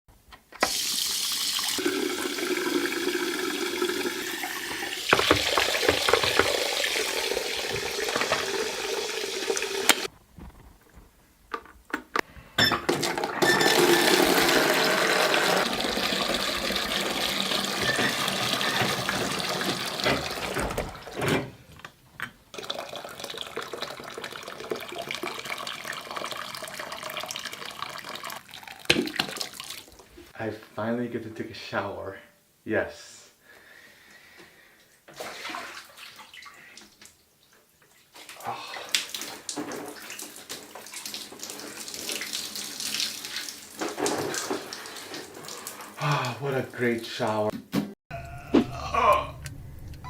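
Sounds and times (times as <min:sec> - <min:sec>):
water running from a tap: 0:00.6 - 0:10.1, 0:13.4 - 0:20.9, 0:22.6 - 0:30.0, 0:38.7 - 0:46.9.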